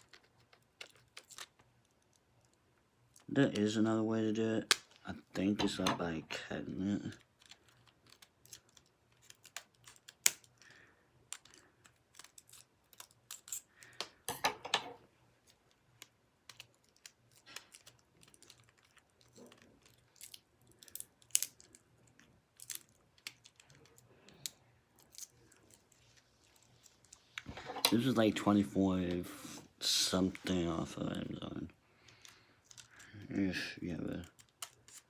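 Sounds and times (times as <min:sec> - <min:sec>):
plastic packaging crackling: 0:00.0 - 0:14.0, 0:15.4 - 0:28.2, 0:33.8 - 0:35.0.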